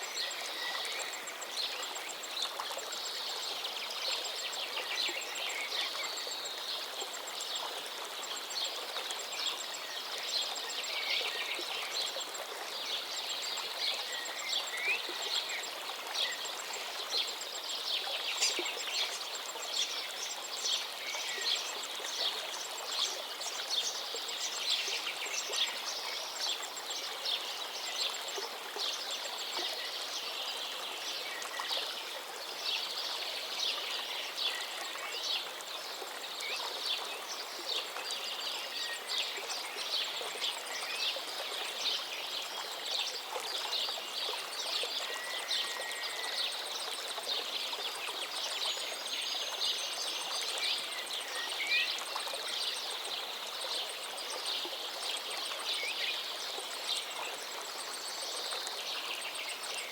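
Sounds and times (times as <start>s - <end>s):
forest stream babbling: 0.0s - 59.9s.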